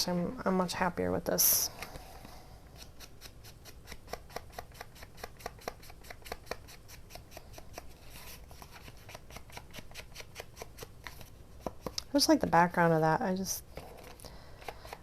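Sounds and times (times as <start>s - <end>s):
scissors snipping paper: 2.8s - 7.9s, 14.1s - 15.0s.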